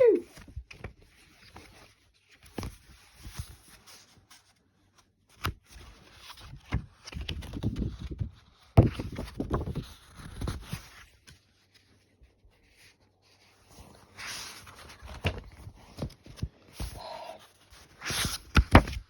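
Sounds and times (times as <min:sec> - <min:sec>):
handling scrapes and rustles: 0:09.0 - 0:19.0.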